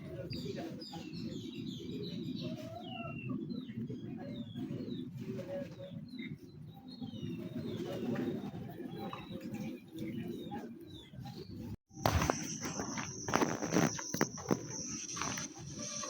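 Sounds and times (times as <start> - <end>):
birds cooing: 0.0 - 11.7
bird chirps: 5.8 - 16.0
high-pitched whine: 11.9 - 16.0.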